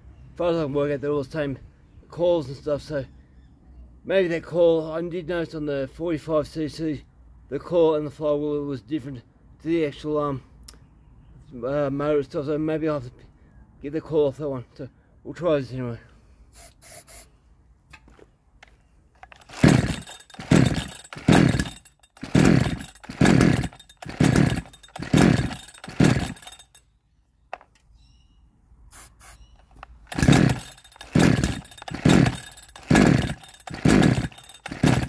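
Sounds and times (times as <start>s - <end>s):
chainsaw engine turning over: 19.2s - 26.8s, 29.6s - 35.0s
chainsaw recoil starter pulls: 19.2s - 26.8s, 29.6s - 35.0s.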